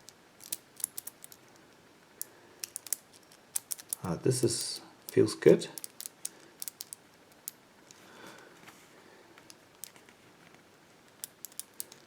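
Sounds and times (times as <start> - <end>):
combination lock wheels clicking: 0.4 - 1.4, 2.6 - 7.6.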